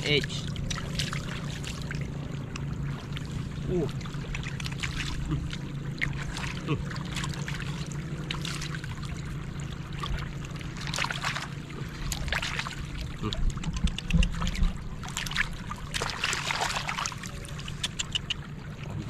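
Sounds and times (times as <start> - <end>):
shallow water splashing: 0.0 - 19.0
steady low hum: 0.0 - 19.0.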